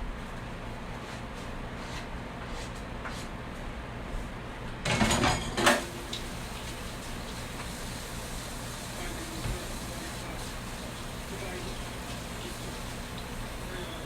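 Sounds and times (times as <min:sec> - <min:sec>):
dishes and utensils clattering: 0:04.8 - 0:05.9.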